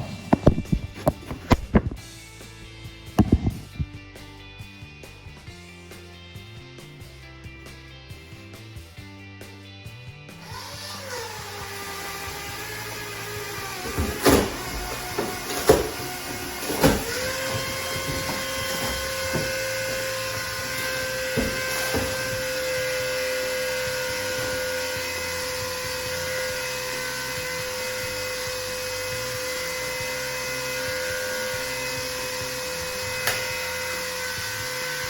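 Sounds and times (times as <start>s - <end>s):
pump motor humming: 10.4s - 35.0s
loud clunks: 13.5s - 25.0s.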